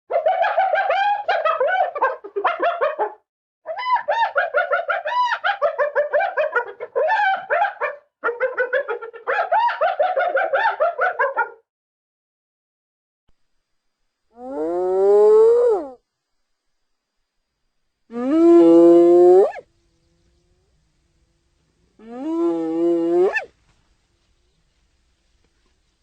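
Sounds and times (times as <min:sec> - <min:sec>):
hyena giggling yelps: 0:00.1 - 0:11.6.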